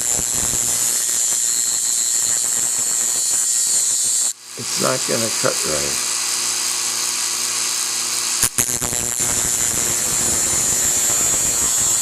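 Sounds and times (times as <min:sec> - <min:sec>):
drill bit grinding: 0:00.0 - 0:12.0
rotary tool whining: 0:00.0 - 0:12.0.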